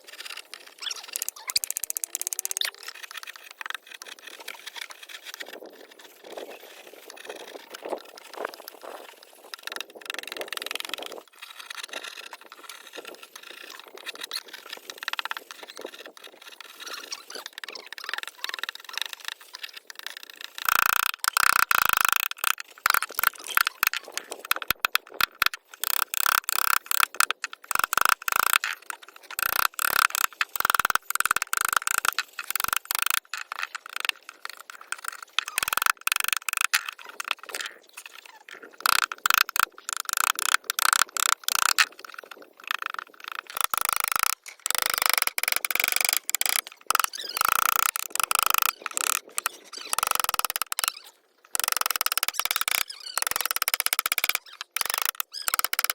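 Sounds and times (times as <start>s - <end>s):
carving tool scraping wood: 0.1s - 55.9s.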